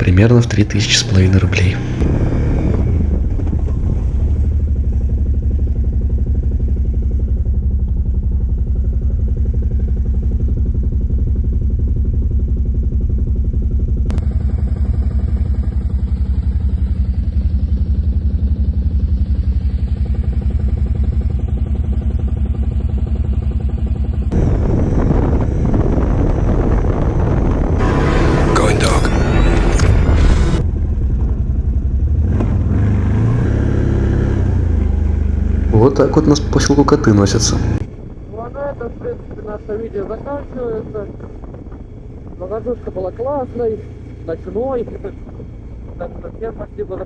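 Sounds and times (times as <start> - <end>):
atv engine droning: 0.0 - 47.0.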